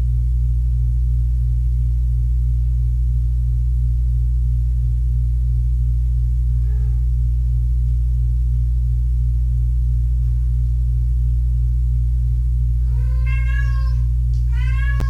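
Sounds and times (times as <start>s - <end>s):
steady low hum: 0.0s - 15.0s
kitten meowing: 6.5s - 7.1s, 12.9s - 15.0s.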